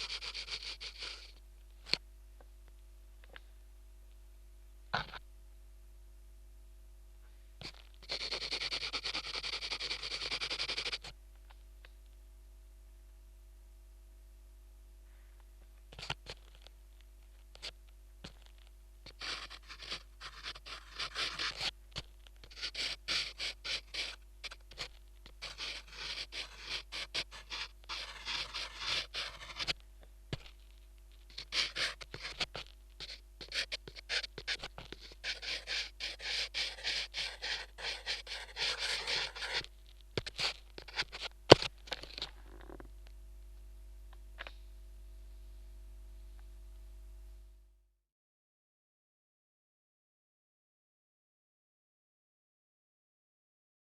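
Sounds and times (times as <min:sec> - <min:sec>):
rapid scratching and scraping strokes: 0:00.0 - 0:01.3, 0:07.6 - 0:11.0, 0:17.6 - 0:29.8, 0:31.2 - 0:42.3
low electrical hum: 0:00.0 - 0:47.9.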